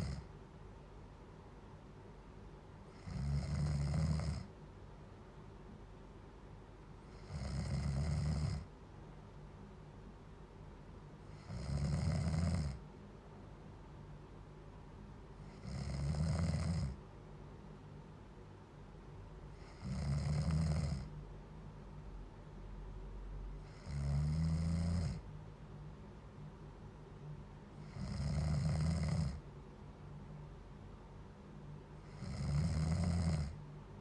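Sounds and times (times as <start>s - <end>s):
person snoring loudly: 0.0s - 0.3s, 2.9s - 4.5s, 7.1s - 8.7s, 11.3s - 12.8s, 15.4s - 17.0s, 19.6s - 21.1s, 23.6s - 25.2s, 27.8s - 29.4s, 32.0s - 33.6s.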